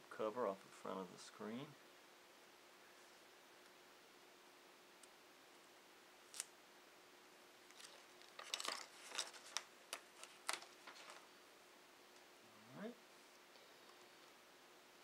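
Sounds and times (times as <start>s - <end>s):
plastic film peeling: 6.3s - 6.5s, 7.7s - 11.3s.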